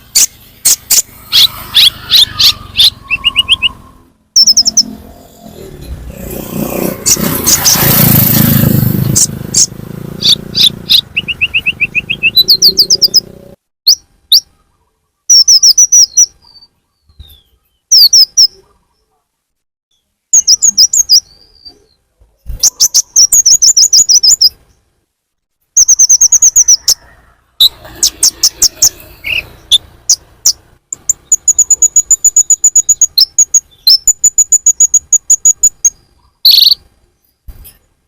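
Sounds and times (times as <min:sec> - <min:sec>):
high-pitched downward-sweeping chirps: 0:00.0 - 0:06.0, 0:06.7 - 0:08.4, 0:09.0 - 0:14.5, 0:25.8 - 0:36.8.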